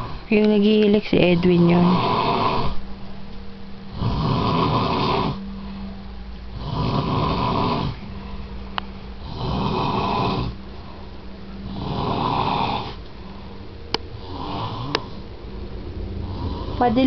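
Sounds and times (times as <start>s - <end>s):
man snoring: 1.7s - 2.8s, 3.9s - 5.4s, 6.5s - 8.0s, 9.2s - 10.6s, 11.6s - 13.0s, 14.2s - 15.2s, 16.2s - 16.8s.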